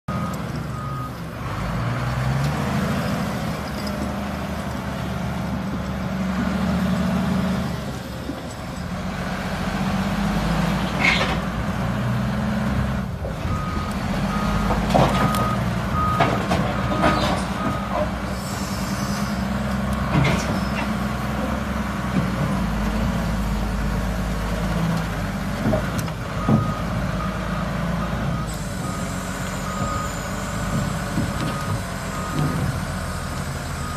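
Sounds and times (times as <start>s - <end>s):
reversing alarm beeps: 0.1s - 1.2s, 13.5s - 18.8s, 26.4s - 33.9s
diesel engine running steadily: 0.1s - 33.9s.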